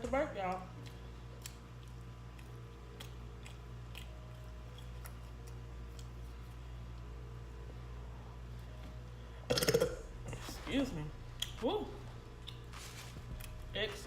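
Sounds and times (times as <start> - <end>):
steady low hum: 0.0 - 14.0
person chewing food: 0.8 - 7.1, 12.3 - 13.6.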